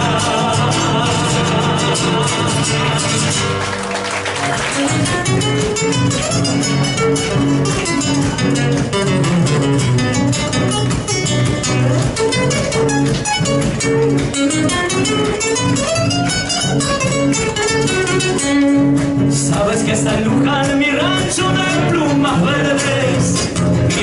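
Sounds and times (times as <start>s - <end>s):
acoustic guitar folk music: 0.0s - 24.0s.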